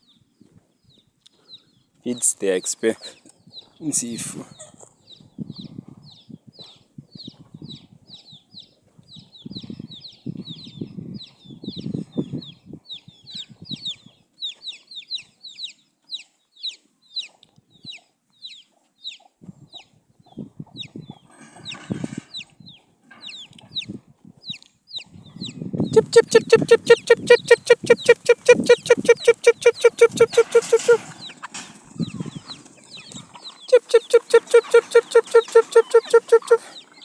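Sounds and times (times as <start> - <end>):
chicks peeping: 22.4 - 37.0
chickens clucking: 25.9 - 37.0.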